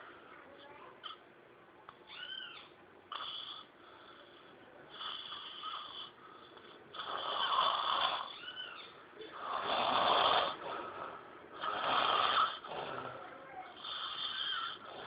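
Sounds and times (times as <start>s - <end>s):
pig snoring: 3.1s - 3.7s, 4.9s - 8.6s, 9.2s - 15.0s.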